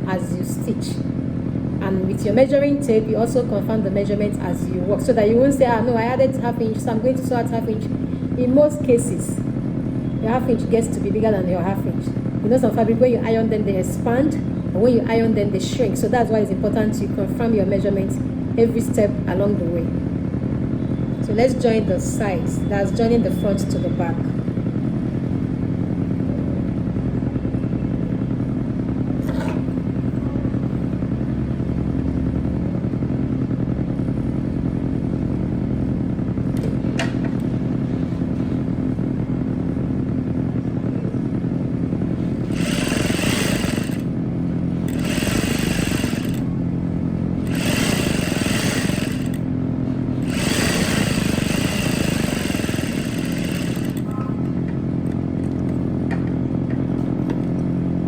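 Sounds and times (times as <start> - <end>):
sewing machine motor humming: 42.2 - 46.6, 47.4 - 49.5, 50.1 - 54.2
sewing machine stitching clatter: 42.4 - 44.1, 44.9 - 46.4, 47.4 - 49.4, 50.2 - 54.1.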